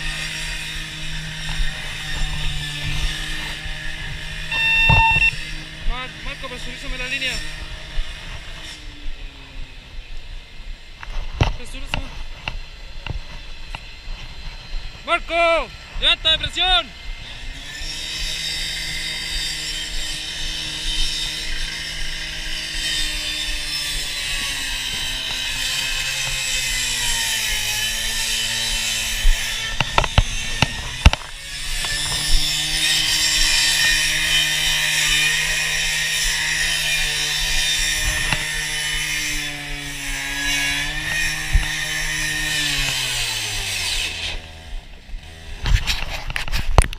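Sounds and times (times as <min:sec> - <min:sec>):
fire engine pump running: 0:00.0 - 0:09.3
engine running at high speed: 0:00.0 - 0:46.9.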